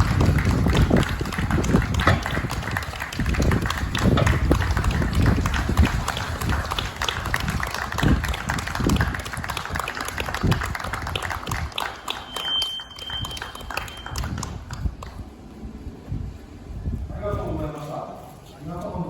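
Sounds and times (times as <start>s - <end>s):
wind buffeting microphone: 0.0s - 12.2s, 13.0s - 19.0s
crowd applauding: 0.0s - 15.3s
thin high tone: 12.0s - 14.2s.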